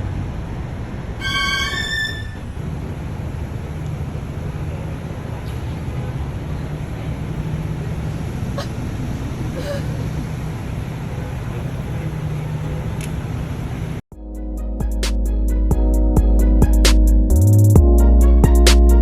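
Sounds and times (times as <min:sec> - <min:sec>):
vehicle low rumble: 0:00.0 - 0:14.0.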